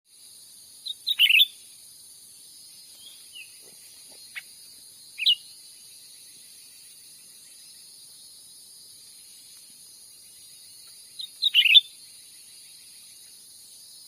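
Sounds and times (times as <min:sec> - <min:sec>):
high-pitched insect drone: 0:00.1 - 0:14.0
bird chirping calls: 0:00.8 - 0:01.7, 0:02.7 - 0:08.1, 0:09.0 - 0:13.5.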